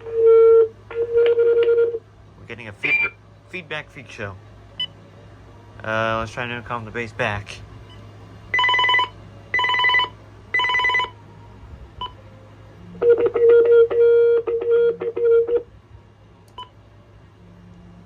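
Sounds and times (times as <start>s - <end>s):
cordless phone intercom beeps: 7.9s - 11.2s
phone trill ring: 8.6s - 11.1s.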